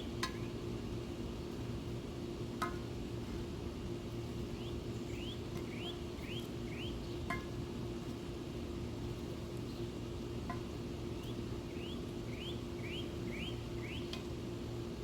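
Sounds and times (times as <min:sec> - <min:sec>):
bird chirping: 0:11.2 - 0:14.1.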